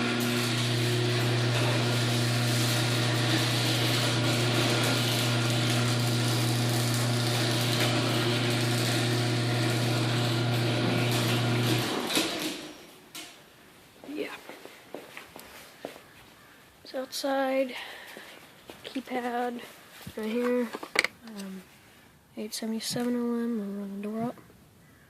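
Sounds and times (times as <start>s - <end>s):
garage door opener motor hum: 0.0s - 13.3s.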